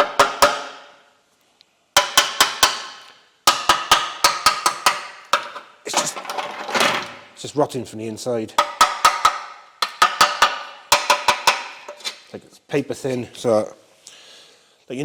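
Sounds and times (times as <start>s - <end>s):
sharp metal taps ringing: 0.0s - 1.0s, 2.0s - 5.8s, 8.6s - 12.1s.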